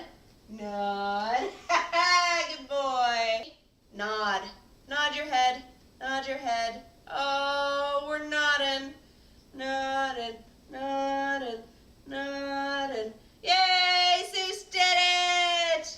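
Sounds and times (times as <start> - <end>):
woman singing long notes: 9.6 - 15.9.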